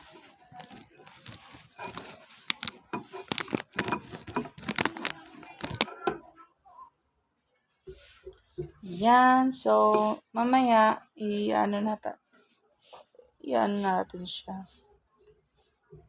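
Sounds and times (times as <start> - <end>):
spoon stirring batter in bowl: 0.0 - 6.4, 9.7 - 10.3.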